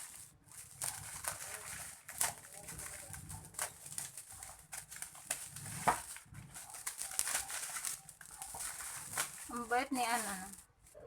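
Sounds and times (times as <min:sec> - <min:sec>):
plastic packaging crinkling: 0:00.0 - 0:11.0.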